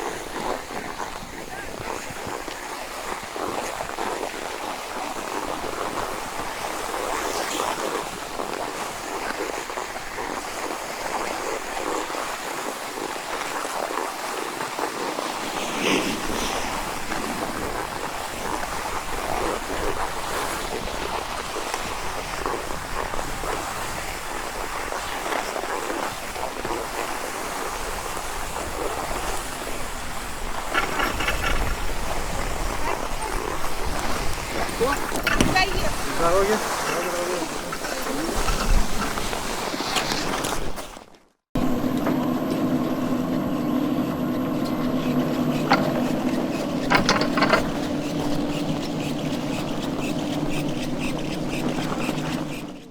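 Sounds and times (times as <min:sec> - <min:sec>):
skis sliding over packed snow: 0:00.0 - 0:41.2, 0:45.4 - 0:52.9
ski lift machinery humming: 0:25.7 - 0:40.4, 0:41.6 - 0:52.9.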